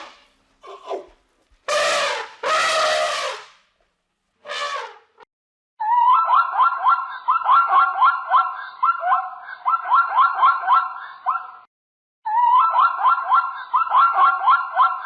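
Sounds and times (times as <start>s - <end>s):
trumpet-like animal blasts: 0.0s - 0.3s, 1.7s - 3.6s, 4.4s - 5.2s.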